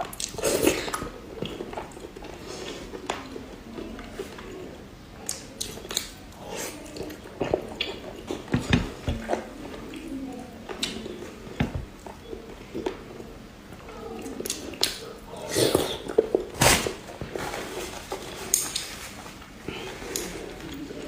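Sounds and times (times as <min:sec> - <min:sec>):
person chewing and lip-smacking: 0:05.2 - 0:08.5.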